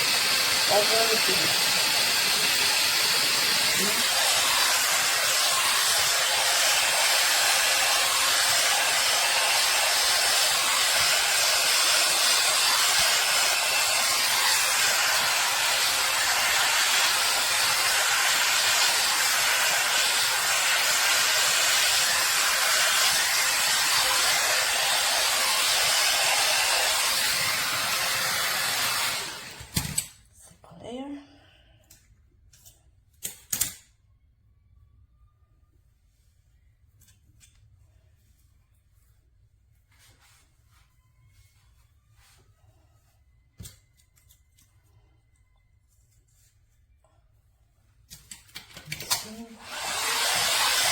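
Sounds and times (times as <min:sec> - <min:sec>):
hot air brush fan blowing: 0:00.0 - 0:29.7, 0:49.4 - 0:50.9.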